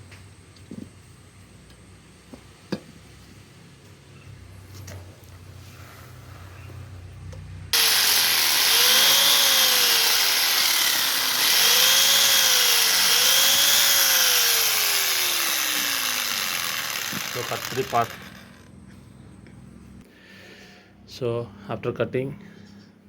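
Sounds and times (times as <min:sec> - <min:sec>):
power tool cutting metal: 0:07.8 - 0:18.6.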